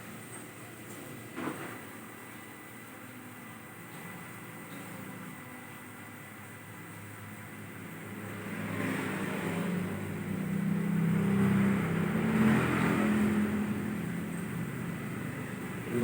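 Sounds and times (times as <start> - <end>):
vehicle engine passing by: 8.2 - 16.0.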